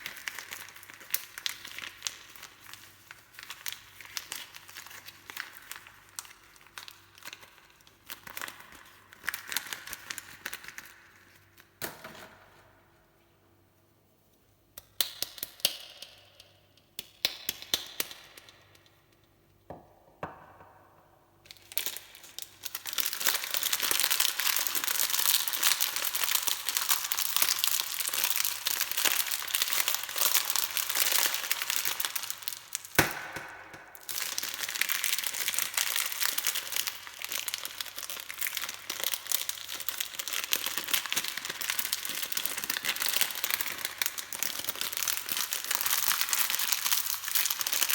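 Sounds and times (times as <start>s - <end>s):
wrapper crinkling and tearing: 0.0s - 11.8s, 21.4s - 33.1s, 33.9s - 47.9s
wrapper crackles: 0.0s - 12.4s, 21.4s - 47.9s
loud snap: 33.0s - 34.0s.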